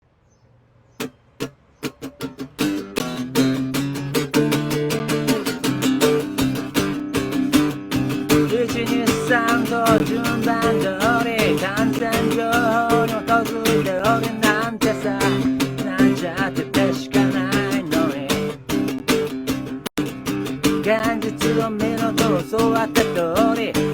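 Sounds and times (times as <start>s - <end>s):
acoustic guitar strumming: 1.0s - 23.9s
person singing: 8.2s - 18.6s, 20.6s - 23.9s.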